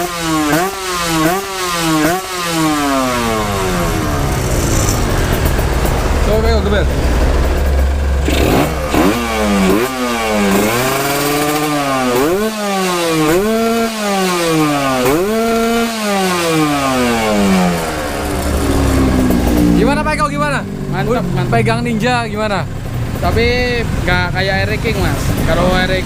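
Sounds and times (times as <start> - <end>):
two-stroke motorcycle engine revving: 0.0 - 26.0.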